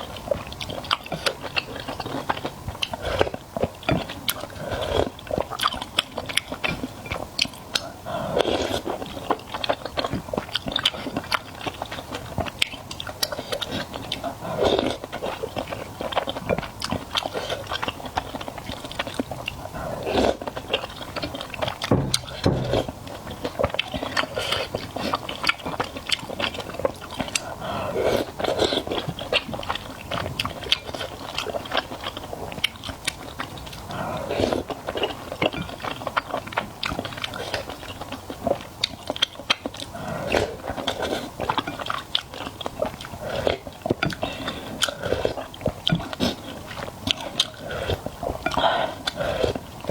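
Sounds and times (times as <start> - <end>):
person chewing crunchy food: 0.0 - 49.9.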